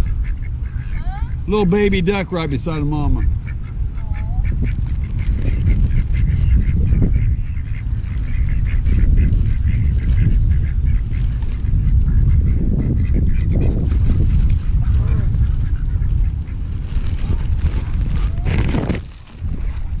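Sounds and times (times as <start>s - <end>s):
ducks quacking: 0.0s - 20.0s
steady low rumble: 0.0s - 20.0s.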